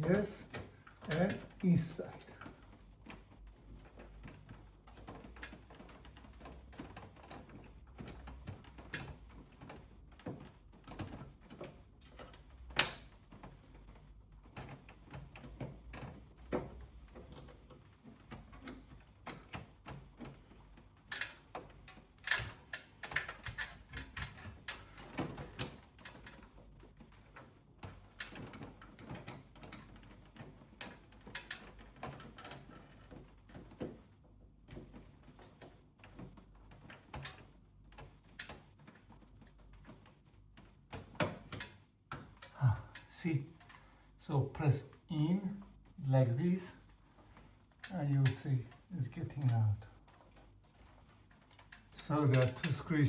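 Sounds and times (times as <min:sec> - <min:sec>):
plastic parts clicking and knocking: 0:00.0 - 0:44.2, 0:46.8 - 0:53.0.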